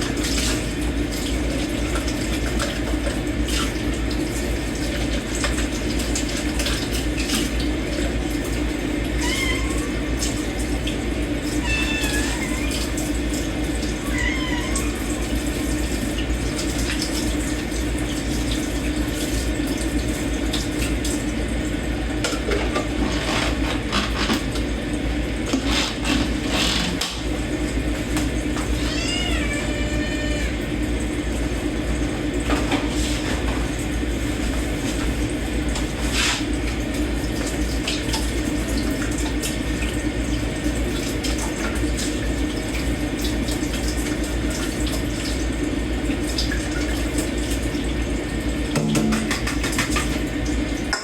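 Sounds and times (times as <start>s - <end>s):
tap water running into sink: 0.0s - 51.0s
cat meowing: 9.2s - 10.1s, 11.6s - 13.0s, 13.9s - 15.4s, 28.6s - 30.6s.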